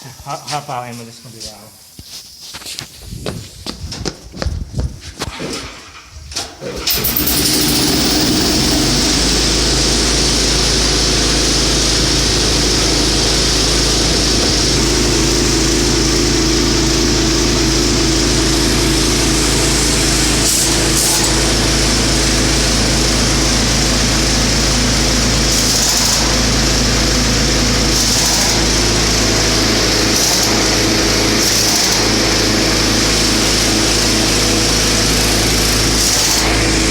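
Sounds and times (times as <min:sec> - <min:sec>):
tractor engine running: 0:06.7 - 0:30.1.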